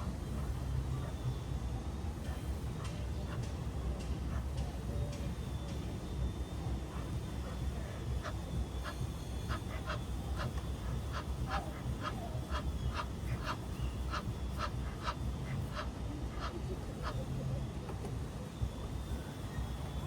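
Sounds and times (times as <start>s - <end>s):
duck quacking: 11.1s - 17.1s.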